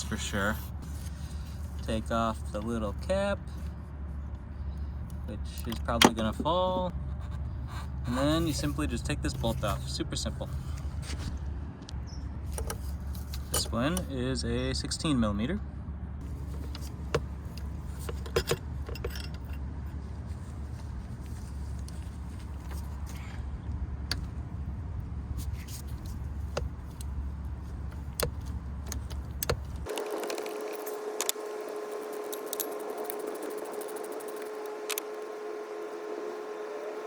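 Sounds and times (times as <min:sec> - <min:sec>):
higher-pitched hum: 0:29.9 - 0:37.0.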